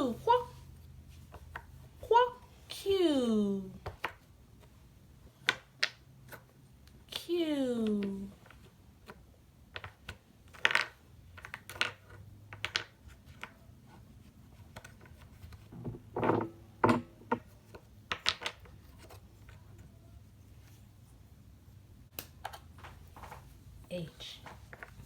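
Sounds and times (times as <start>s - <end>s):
wooden pieces knocking on board: 9.0s - 13.5s, 15.6s - 19.2s.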